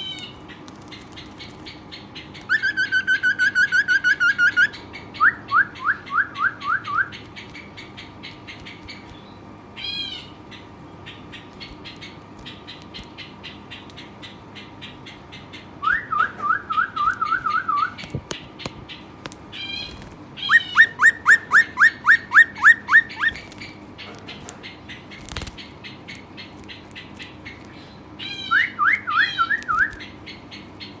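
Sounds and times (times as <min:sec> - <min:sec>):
bird singing rising whistles: 0:02.5 - 0:07.1, 0:20.4 - 0:23.4, 0:28.5 - 0:30.0.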